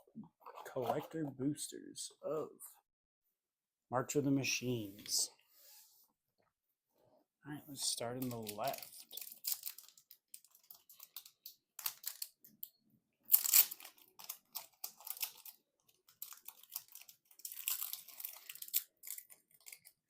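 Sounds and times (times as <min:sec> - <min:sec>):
foil wrapper tearing and crinkling: 0:08.2 - 0:12.4, 0:13.3 - 0:20.0.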